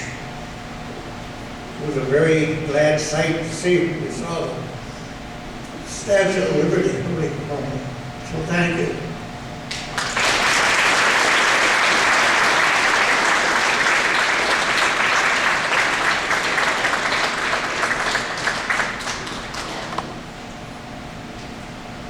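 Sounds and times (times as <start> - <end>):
audience applauding: 9.7 - 20.2.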